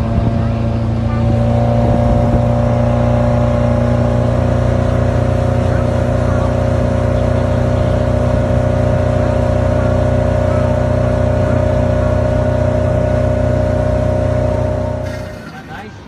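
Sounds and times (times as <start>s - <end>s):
outboard motor running: 0.0s - 16.0s.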